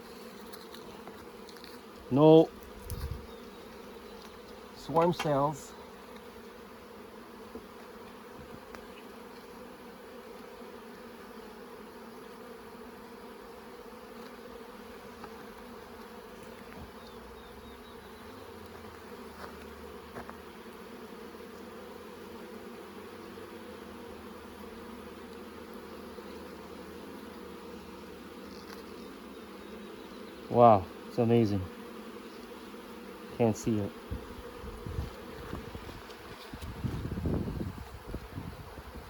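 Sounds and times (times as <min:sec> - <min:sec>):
honeybees buzzing: 0:00.0 - 0:39.0
hive frames clicking: 0:04.1 - 0:05.4.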